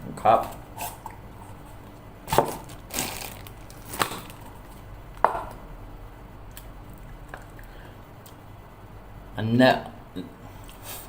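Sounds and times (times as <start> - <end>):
plastic packaging crackling: 2.3 - 4.8.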